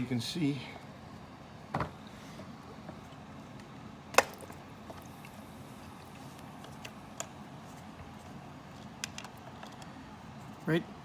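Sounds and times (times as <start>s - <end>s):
small parts clicking and tapping: 8.7s - 9.9s.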